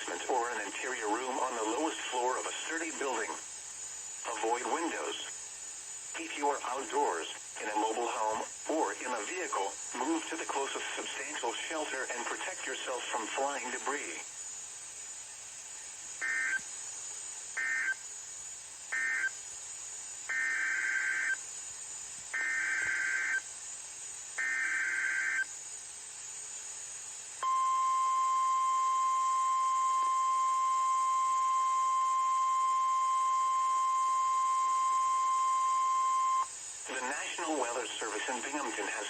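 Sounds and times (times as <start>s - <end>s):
steady warning alarm tone: 16.2s - 16.6s, 17.6s - 18.1s, 18.9s - 19.4s, 20.3s - 21.4s, 22.4s - 23.5s, 24.4s - 25.6s, 27.4s - 36.6s.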